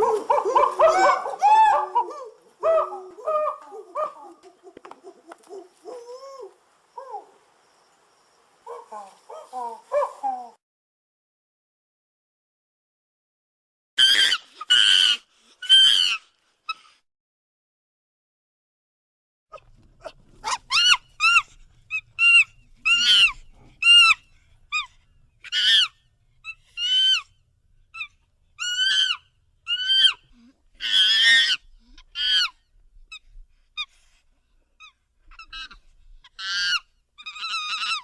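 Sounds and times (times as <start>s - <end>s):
monkey calling: 0.0s - 7.3s, 19.5s - 27.3s, 27.9s - 32.6s, 34.8s - 38.0s.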